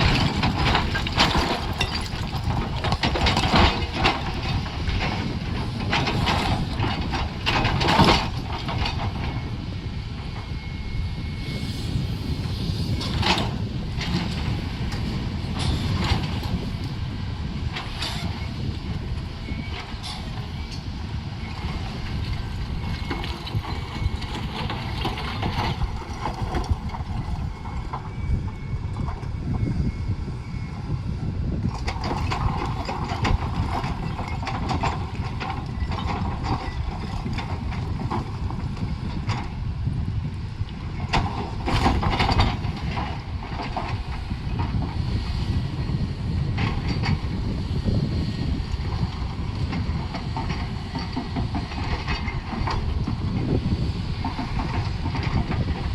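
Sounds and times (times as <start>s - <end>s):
metallic clatter and scraping: 0.0s - 9.4s
heavy machinery diesel rumble: 0.0s - 55.9s.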